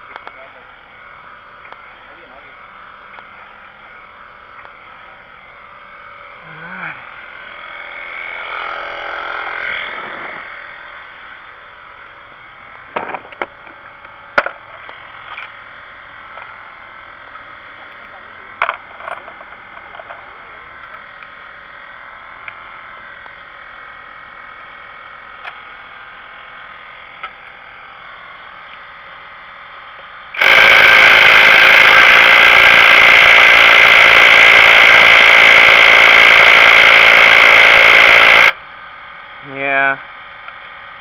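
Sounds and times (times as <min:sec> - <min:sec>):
loud power tool running: 0:00.1 - 0:38.7.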